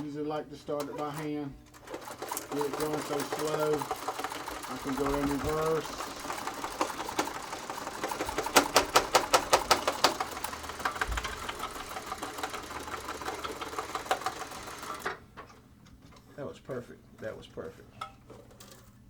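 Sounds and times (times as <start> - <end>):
sewing machine stitching: 0.7 - 15.2.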